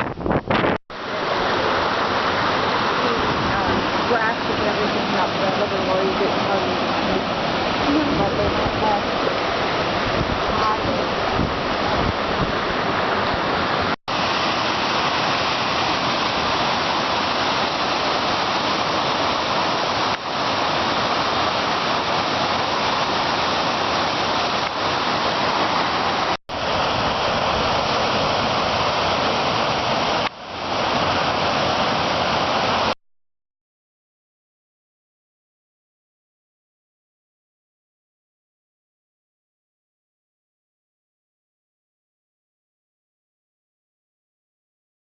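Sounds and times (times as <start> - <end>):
wind buffeting microphone: 0.0 - 0.8, 3.2 - 13.9.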